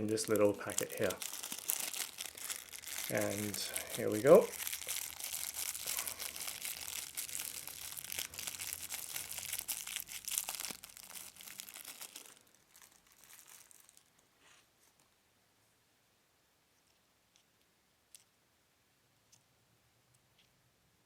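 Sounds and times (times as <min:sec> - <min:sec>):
packet crinkling and rustling: 0:00.0 - 0:15.1.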